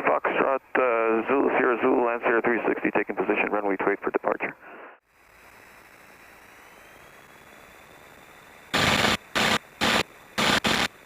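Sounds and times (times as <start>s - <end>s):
radio static bursts: 0.0s - 4.6s, 8.7s - 11.0s
faint radio hiss: 0.0s - 11.0s.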